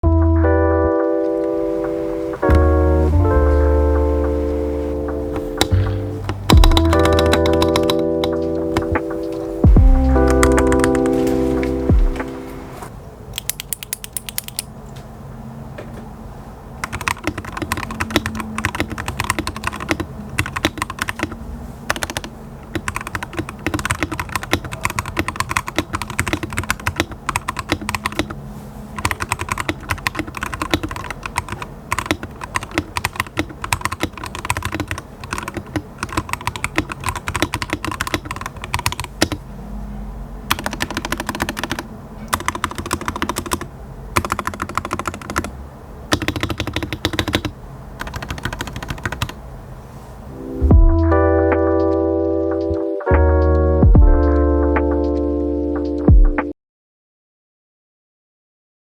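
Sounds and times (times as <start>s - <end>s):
mechanical keyboard typing: 4.2s - 12.6s, 13.4s - 14.7s, 16.8s - 39.4s, 40.5s - 49.4s.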